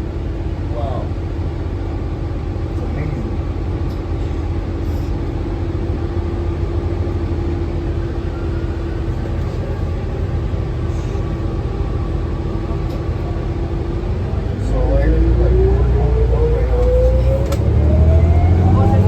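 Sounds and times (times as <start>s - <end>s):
bus engine rumble: 0.0s - 19.0s.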